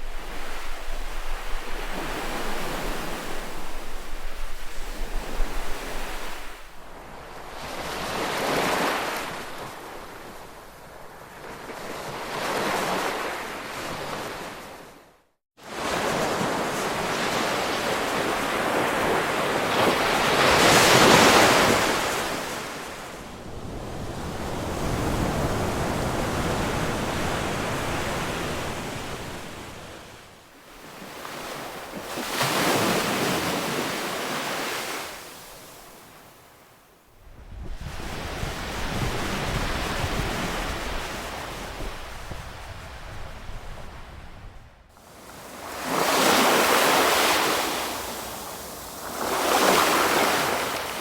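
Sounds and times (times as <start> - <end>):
ocean waves washing in: 37.4 - 51.0.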